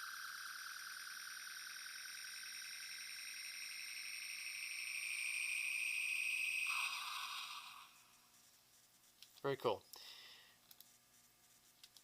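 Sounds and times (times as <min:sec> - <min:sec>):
pulsing high electronic whine: 0:00.0 - 0:08.3.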